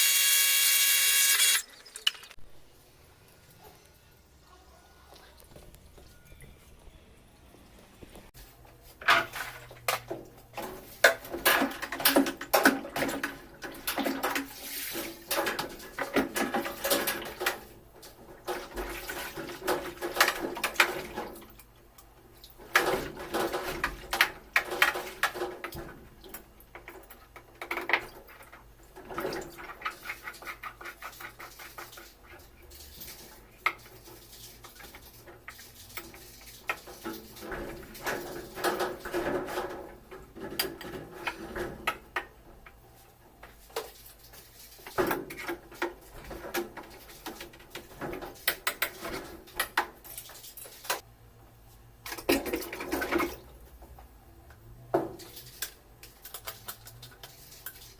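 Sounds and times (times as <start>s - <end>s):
scrubbing and scraping: 28.2s - 41.8s, 55.2s - 57.9s.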